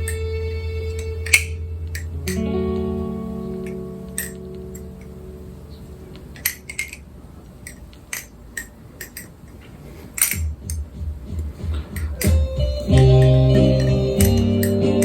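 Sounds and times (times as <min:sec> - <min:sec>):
background music: 0:00.0 - 0:05.1, 0:10.6 - 0:15.0.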